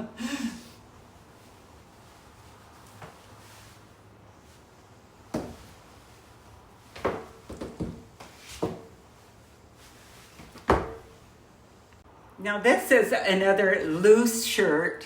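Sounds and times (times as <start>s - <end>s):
clothes and hangers rustling: 0.8s - 11.4s.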